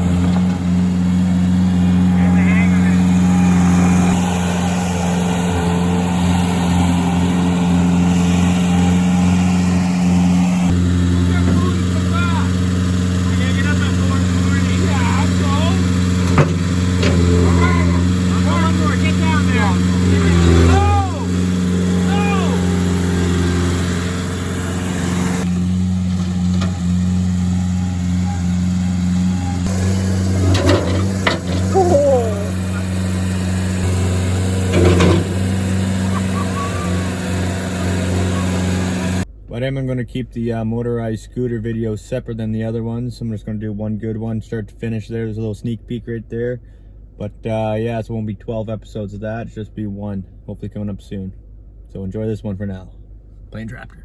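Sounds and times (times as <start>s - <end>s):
loader engine humming: 0.0s - 39.3s.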